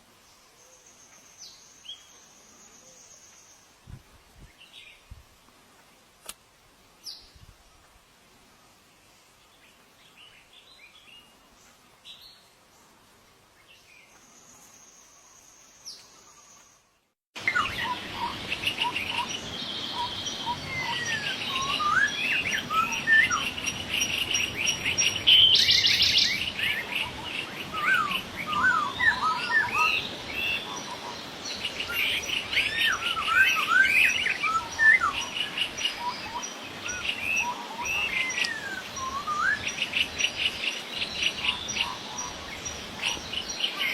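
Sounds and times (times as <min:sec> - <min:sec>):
birds chirping and calling: 0:17.4 - 0:43.9.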